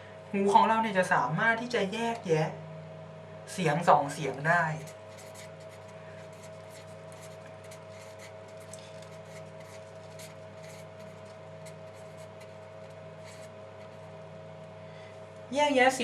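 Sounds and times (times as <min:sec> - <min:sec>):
low electrical hum: 0:00.0 - 0:16.0
pen scratching on paper: 0:04.8 - 0:14.1.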